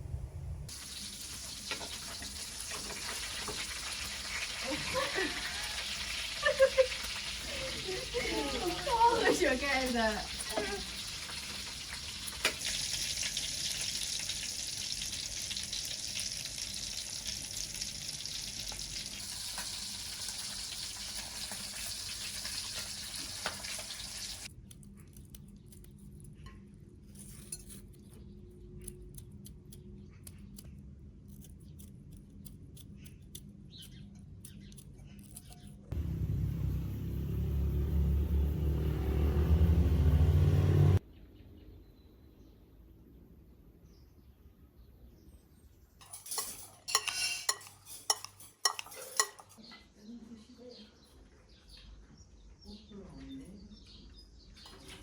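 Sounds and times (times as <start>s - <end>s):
loud low rumble: 0.0s - 0.7s, 35.9s - 41.0s
food sizzling in frying pan: 0.7s - 24.5s
light clicks and clinks: 46.0s - 49.9s.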